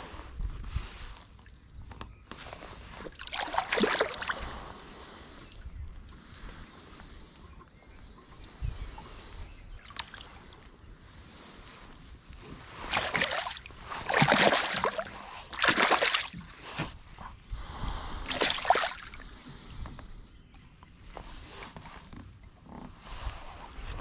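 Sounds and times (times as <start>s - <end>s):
water splashing and sloshing: 0.6s - 17.5s, 18.2s - 20.0s.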